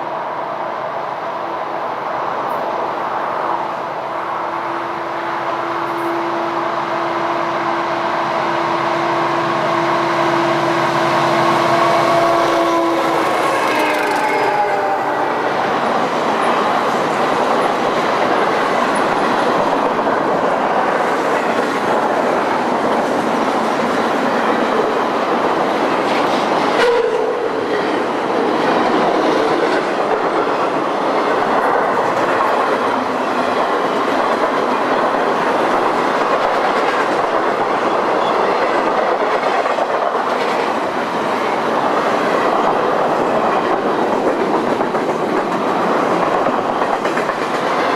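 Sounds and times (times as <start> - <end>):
train wheels clattering on track: 5.8 - 6.5, 10.3 - 47.9.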